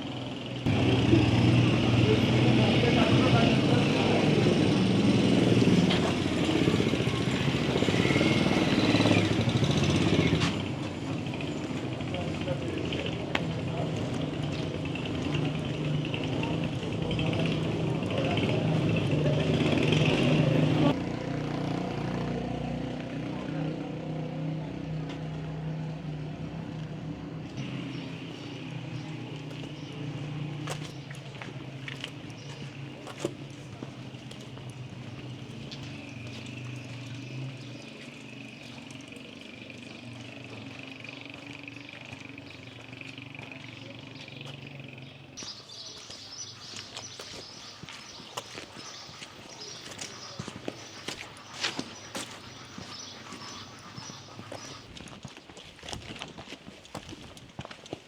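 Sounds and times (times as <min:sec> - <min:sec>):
vehicle engine running: 0:00.0 - 0:54.9.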